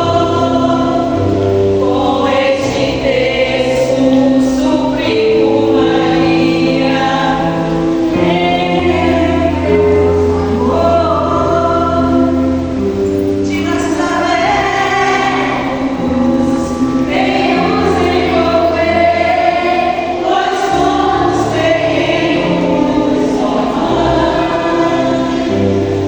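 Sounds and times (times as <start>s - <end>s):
choir singing a hymn: 0.0s - 26.0s
instrumental accompaniment: 0.0s - 26.0s.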